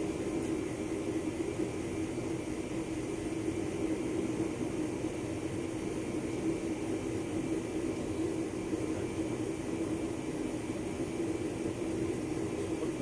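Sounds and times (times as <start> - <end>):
droning hum with hiss: 0.0 - 13.0.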